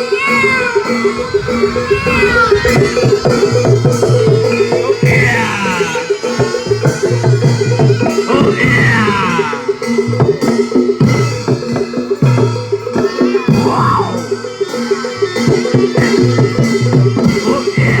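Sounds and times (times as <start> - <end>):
sliding high tone: 0.0 - 6.1
drums: 0.0 - 18.0
gamelan metal instruments: 0.0 - 18.0.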